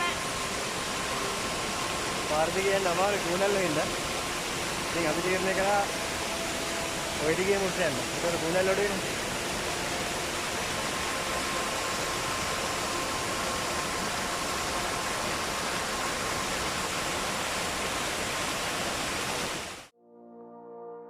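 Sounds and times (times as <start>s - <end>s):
waterfall rushing: 0.0s - 19.9s
slow brass music: 20.0s - 21.0s.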